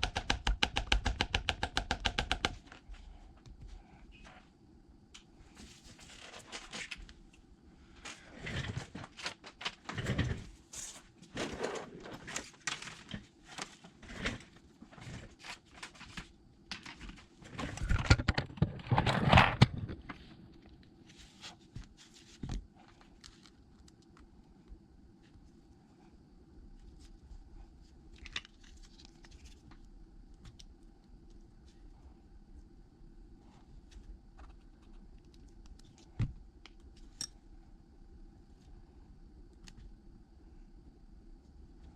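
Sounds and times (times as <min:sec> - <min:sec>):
crinkling: 0:26.8 - 0:31.9.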